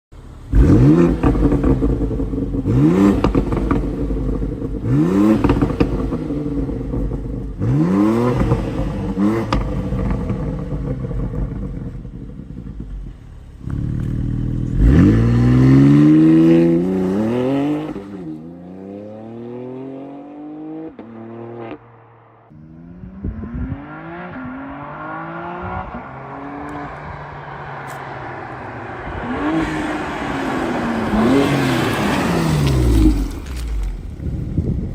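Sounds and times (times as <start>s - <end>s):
car engine revving: 0.2s - 34.7s
exhaust cracks: 21.8s - 34.9s.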